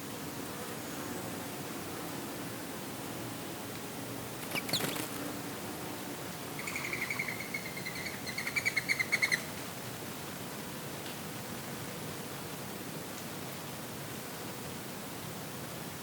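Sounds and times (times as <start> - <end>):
songbird chirping: 6.6 - 9.5.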